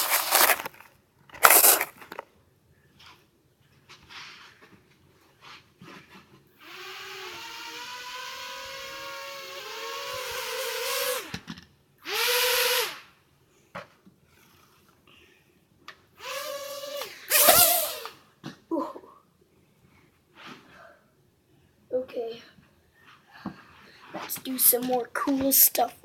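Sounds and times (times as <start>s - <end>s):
toy quadcopter motors whirring: 0.0s - 0.8s, 1.4s - 2.2s, 6.6s - 13.1s, 16.2s - 18.2s.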